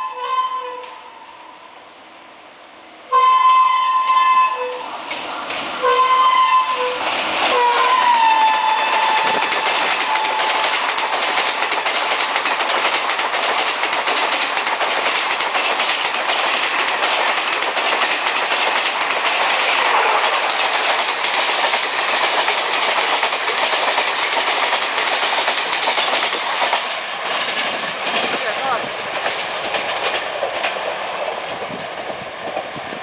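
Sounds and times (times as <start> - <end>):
locomotive horn: 0.0 - 1.2, 3.1 - 4.8, 5.8 - 9.4
train rushing past: 1.4 - 33.0
clickety-clack over rail joints: 7.2 - 33.0.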